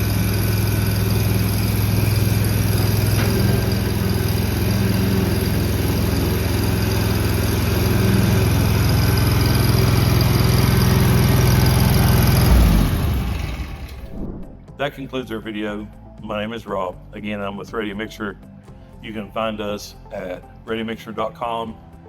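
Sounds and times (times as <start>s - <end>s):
engine running steadily: 0.0s - 14.6s.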